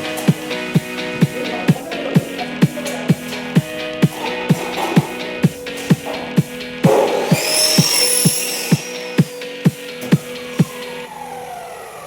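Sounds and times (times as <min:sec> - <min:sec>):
pop music with kick drum: 0:00.0 - 0:11.0
hissing high whine: 0:03.7 - 0:12.0.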